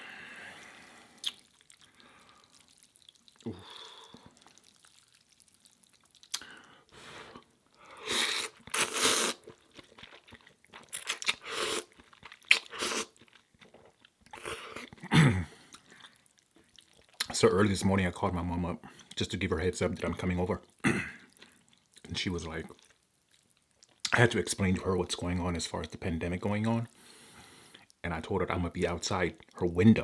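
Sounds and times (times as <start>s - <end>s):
person chewing food: 0.1s - 17.3s, 21.2s - 24.1s.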